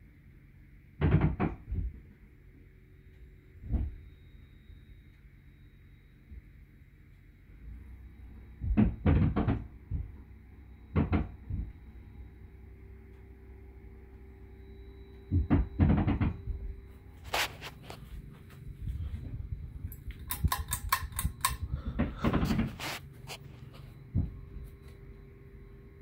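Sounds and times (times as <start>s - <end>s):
ceiling fan motor hum: 0.0s - 26.0s
dull knocks: 8.6s - 10.2s, 11.0s - 11.8s, 15.3s - 16.7s
sharp click: 19.9s - 21.6s.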